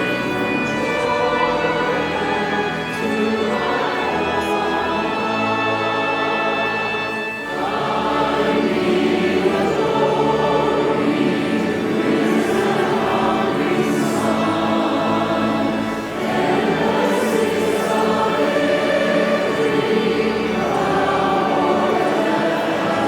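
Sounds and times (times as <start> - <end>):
choir singing: 0.0 - 23.0.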